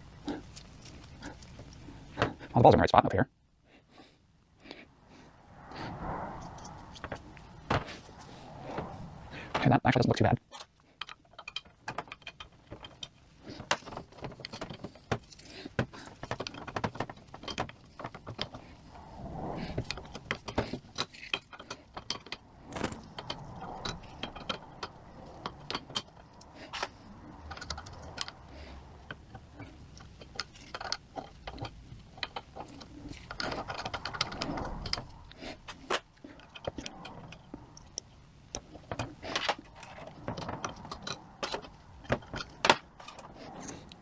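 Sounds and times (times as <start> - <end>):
small metal parts clinking: 10.4 - 18.6, 20.2 - 28.4, 29.1 - 37.1, 38.8 - 44.0.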